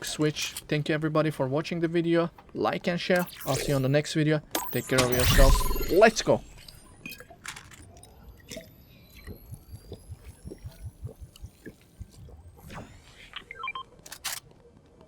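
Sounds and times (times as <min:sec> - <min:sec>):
beeps: 0:03.2 - 0:07.2
gliding high tones: 0:04.6 - 0:07.0.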